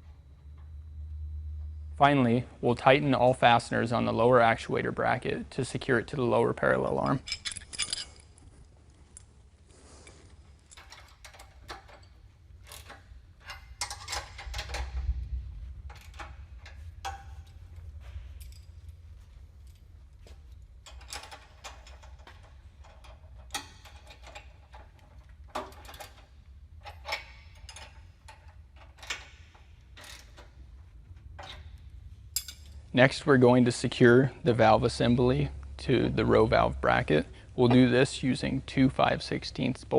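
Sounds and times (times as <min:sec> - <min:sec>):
metal clinks: 0:07.0 - 0:09.4, 0:10.0 - 0:30.6, 0:31.4 - 0:32.9.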